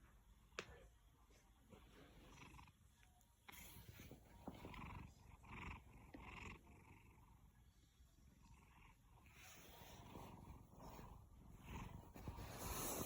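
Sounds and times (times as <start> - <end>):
cat snoring faintly: 3.5 - 13.0.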